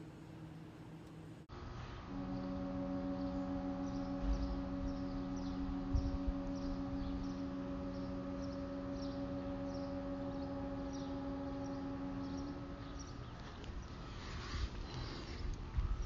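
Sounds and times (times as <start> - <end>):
air horn blast: 1.8 - 13.7.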